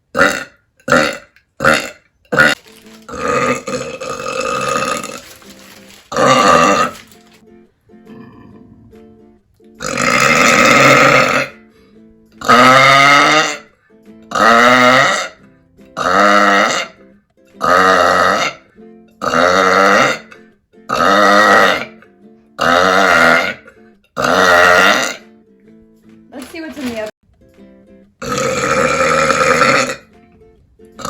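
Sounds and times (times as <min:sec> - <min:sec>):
woman burping loudly: 0:00.1 - 0:07.2, 0:08.0 - 0:09.0, 0:09.8 - 0:11.7, 0:12.4 - 0:13.7, 0:14.3 - 0:15.4, 0:16.0 - 0:25.3, 0:28.2 - 0:30.2.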